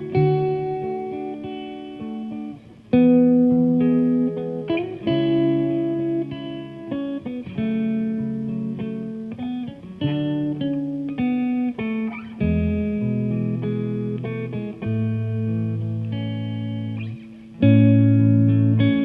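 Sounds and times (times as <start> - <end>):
gentle guitar music: 0.0 - 19.0.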